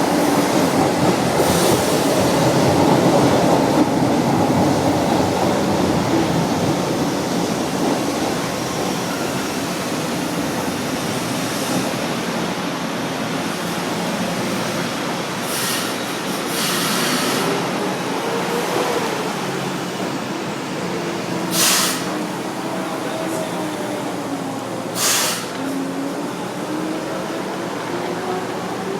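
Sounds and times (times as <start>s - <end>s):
metro train rumbling: 0.0s - 28.9s
short hisses: 21.5s - 22.2s, 25.0s - 25.6s.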